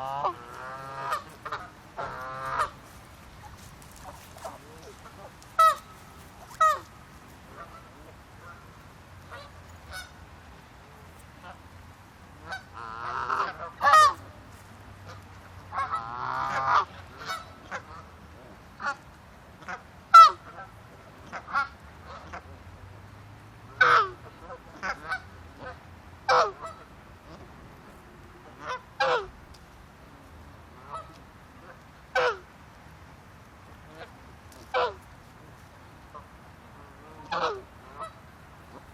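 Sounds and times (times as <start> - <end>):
ducks quacking: 0.0 - 6.9, 12.4 - 14.3, 36.1 - 38.9.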